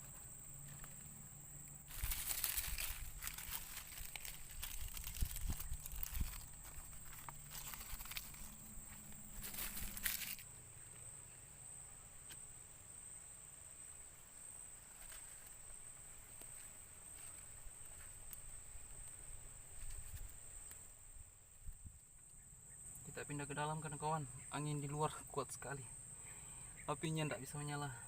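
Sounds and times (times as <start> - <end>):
high-pitched insect trill: 0.0 - 28.0
handling rustling and knocks: 1.9 - 10.4.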